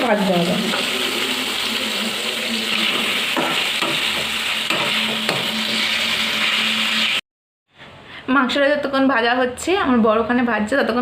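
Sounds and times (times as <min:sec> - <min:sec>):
chicken sizzling in hot oil: 0:00.0 - 0:07.2.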